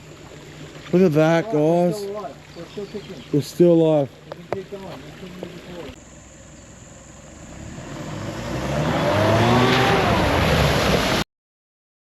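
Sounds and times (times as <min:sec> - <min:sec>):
vehicle engine accelerating: 0:04.9 - 0:11.2.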